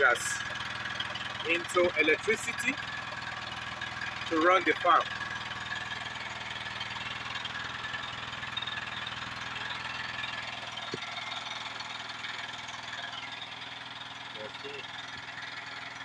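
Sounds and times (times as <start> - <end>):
generator engine running: 0.0 - 16.0.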